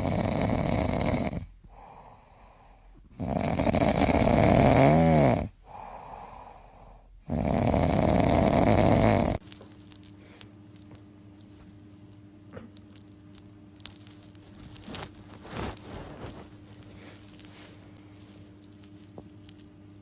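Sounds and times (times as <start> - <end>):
loud rasping snoring: 0.0 - 2.5, 3.1 - 6.0, 7.2 - 9.4.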